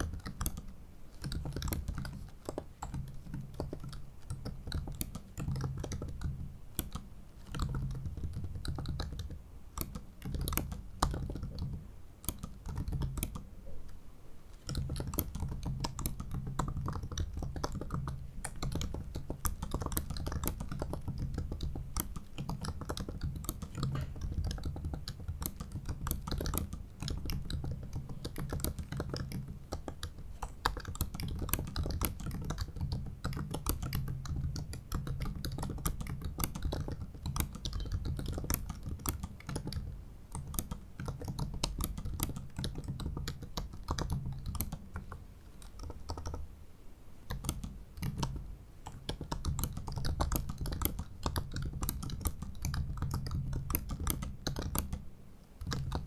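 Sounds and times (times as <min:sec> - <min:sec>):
laptop keyboard typing: 0:00.0 - 0:46.5, 0:47.2 - 0:56.0.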